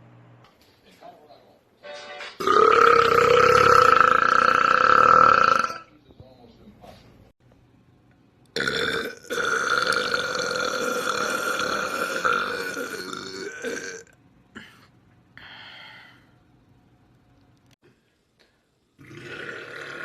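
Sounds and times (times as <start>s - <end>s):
long loud burp: 2.4s - 5.9s, 8.6s - 14.1s, 19.0s - 20.0s.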